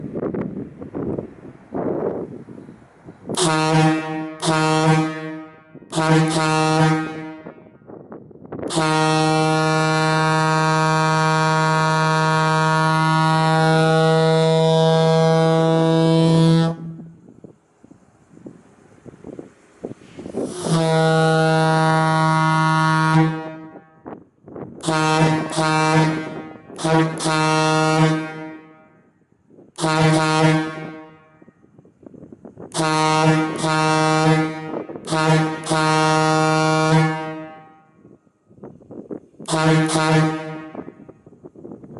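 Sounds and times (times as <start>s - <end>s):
wind noise on microphone: 0.0s - 41.9s
air train horn blasts: 3.3s - 7.8s, 8.6s - 17.3s, 20.2s - 24.2s, 24.8s - 29.2s, 29.8s - 31.7s, 32.7s - 38.1s, 39.4s - 41.2s.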